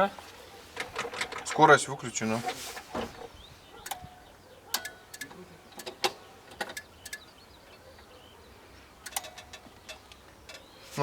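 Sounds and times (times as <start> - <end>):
sharp metallic clicks and clinks: 4.7 - 7.3, 9.0 - 10.7.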